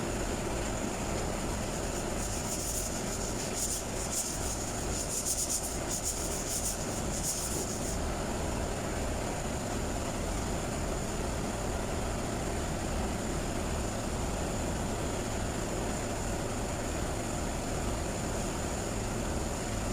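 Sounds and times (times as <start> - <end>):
machine rumble and whine: 0.0 - 19.9
choppy bursts of hiss: 1.4 - 8.0.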